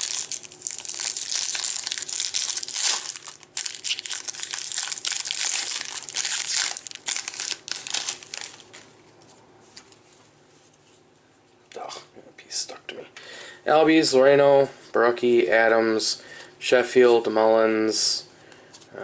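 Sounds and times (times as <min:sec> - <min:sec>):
foil wrapper tearing and crinkling: 0:00.0 - 0:08.9.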